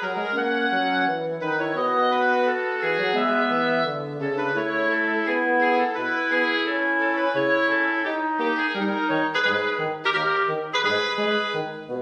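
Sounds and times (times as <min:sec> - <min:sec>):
classical wind instrument music: 0:00.0 - 0:12.0.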